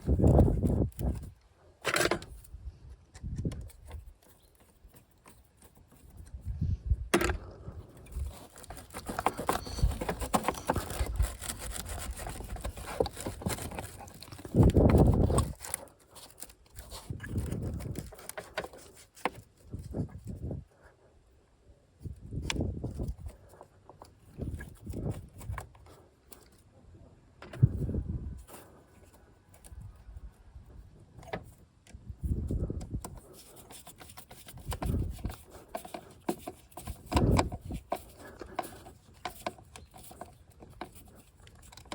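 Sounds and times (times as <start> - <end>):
tools clicking and scraping: 0.0 - 6.4, 7.2 - 19.7, 32.3 - 41.9.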